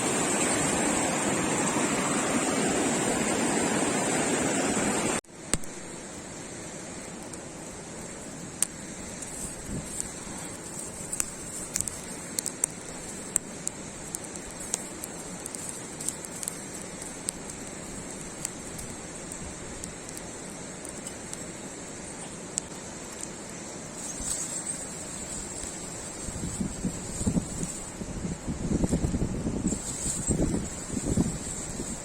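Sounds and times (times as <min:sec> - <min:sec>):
fire hiss: 0:00.0 - 0:32.0
campfire crackling and popping: 0:05.3 - 0:32.0.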